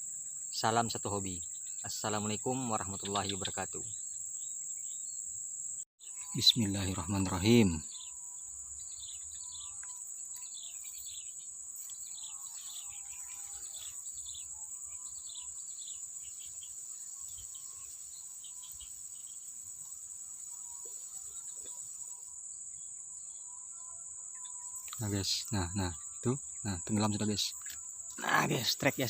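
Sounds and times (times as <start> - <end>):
birds chirping: 0.0 - 29.0
insects droning: 0.0 - 29.0.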